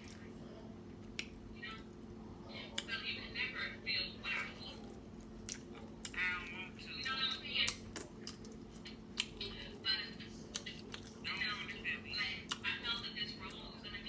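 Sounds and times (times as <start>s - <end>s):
steady low hum: 0.0s - 14.0s
close chewing: 4.1s - 13.9s.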